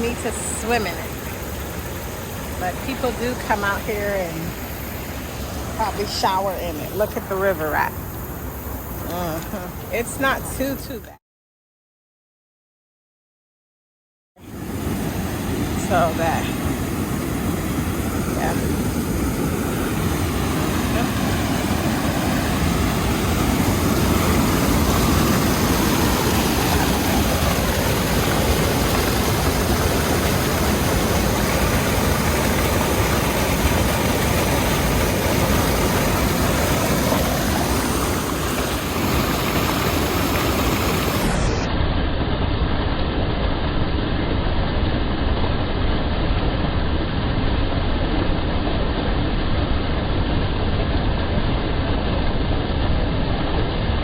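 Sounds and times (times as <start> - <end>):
waterfall rushing: 0.0 - 7.3, 14.4 - 41.7.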